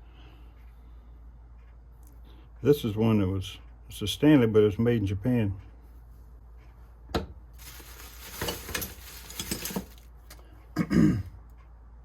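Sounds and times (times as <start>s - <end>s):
metal hand tools clinking: 7.6s - 10.0s.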